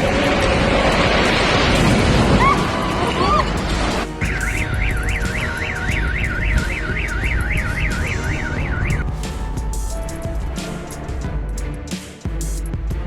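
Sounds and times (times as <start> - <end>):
steady low rumble: 0.0 - 13.0
electronic alarm yelping: 4.2 - 9.0.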